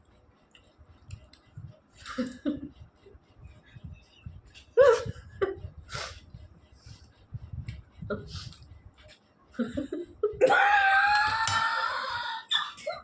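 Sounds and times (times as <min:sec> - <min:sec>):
person hissing and sniffing: 0:05.9 - 0:07.0
person wailing: 0:10.3 - 0:12.5.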